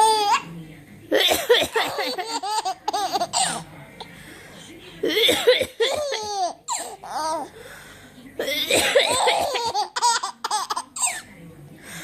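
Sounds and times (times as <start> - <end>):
woman coughing: 1.2 - 2.3, 3.0 - 3.6, 5.0 - 7.0, 8.4 - 11.2
baby laughing: 1.9 - 3.6, 9.2 - 10.9.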